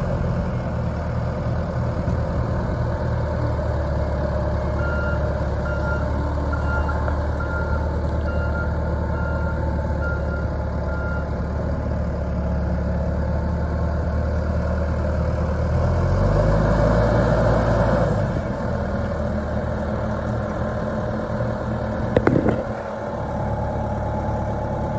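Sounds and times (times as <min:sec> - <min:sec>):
diesel engine running: 0:00.0 - 0:24.9
reversing alarm beeping: 0:04.8 - 0:11.3.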